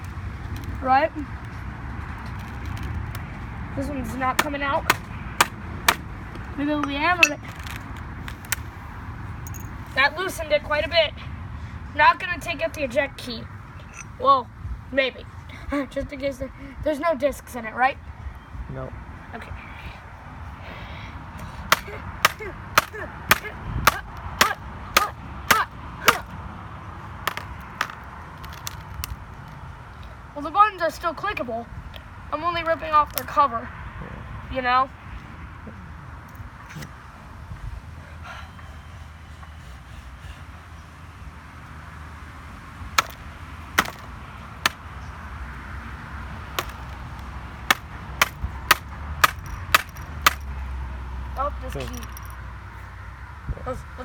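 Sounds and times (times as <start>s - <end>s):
hammer striking laptop keyboard: 27.3s - 28.0s, 43.8s - 44.0s, 46.6s - 46.9s, 47.7s - 50.4s.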